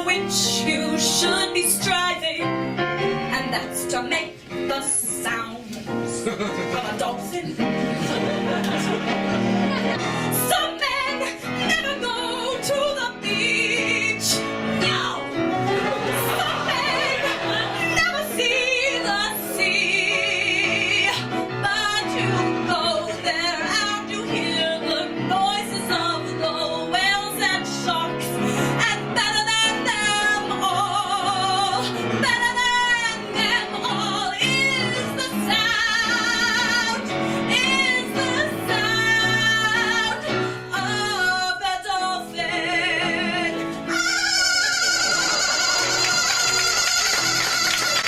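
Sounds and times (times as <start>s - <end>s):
musical accompaniment: 0.0s - 48.0s.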